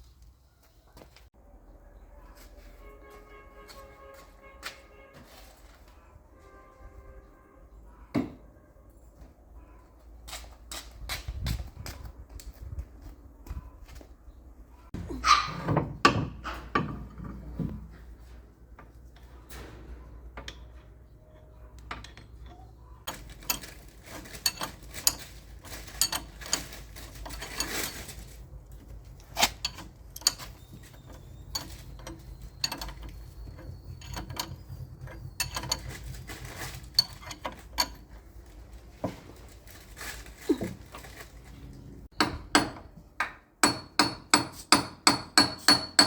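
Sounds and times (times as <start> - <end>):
metallic tool clicks and clanks: 21.8 - 28.1, 29.1 - 38.2.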